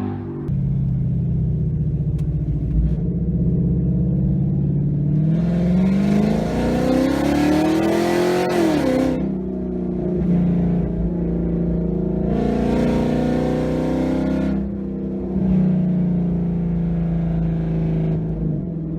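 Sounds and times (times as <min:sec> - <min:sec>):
car engine accelerating: 0:00.0 - 0:18.9.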